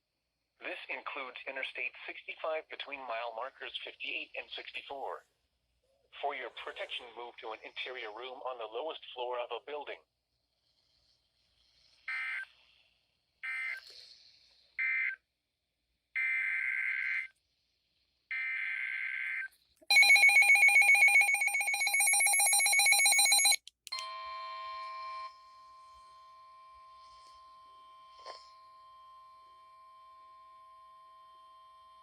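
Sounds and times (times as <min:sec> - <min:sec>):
pulsing electronic alarm: 0:12.1 - 0:12.6, 0:13.4 - 0:13.8, 0:14.8 - 0:15.3, 0:16.2 - 0:17.4, 0:18.3 - 0:32.0
steady single-pitch alert tone: 0:19.9 - 0:26.8.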